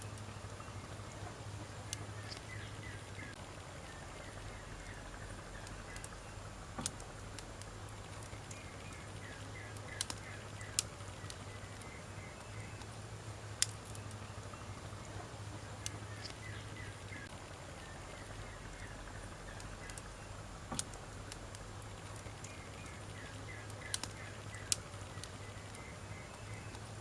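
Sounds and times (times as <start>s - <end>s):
soft hiss: 0.0s - 27.0s
wood fire crackling: 0.0s - 27.0s
sharp fire pops: 4.0s - 12.0s, 12.7s - 14.2s, 18.1s - 25.9s.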